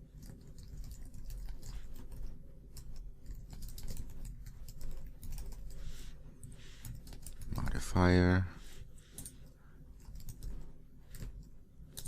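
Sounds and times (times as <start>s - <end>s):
low steady hum: 0.0s - 12.0s
typing on computer keyboard: 0.2s - 5.8s, 10.0s - 10.5s.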